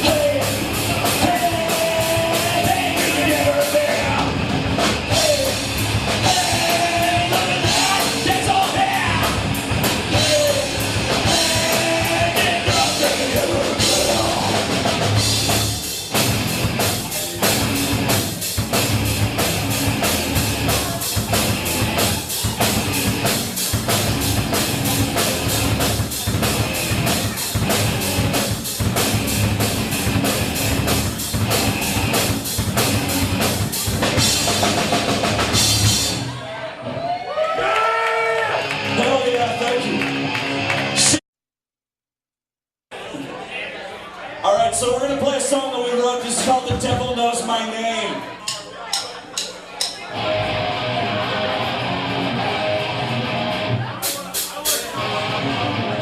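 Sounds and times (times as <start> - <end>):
steady drum beat: 0.0 - 36.3, 53.9 - 55.0
rock band playing: 0.0 - 36.4, 38.5 - 41.2, 48.5 - 56.0.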